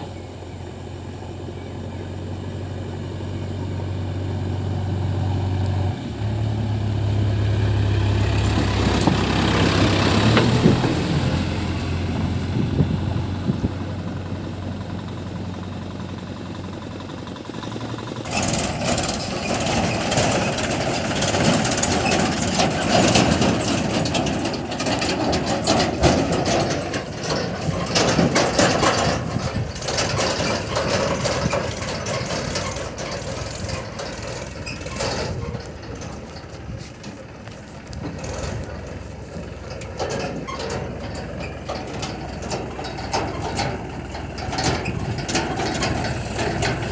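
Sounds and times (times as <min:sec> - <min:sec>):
diesel engine running: 0:00.0 - 0:46.9
harsh clattering and scraping: 0:07.8 - 0:12.9, 0:17.4 - 0:46.9.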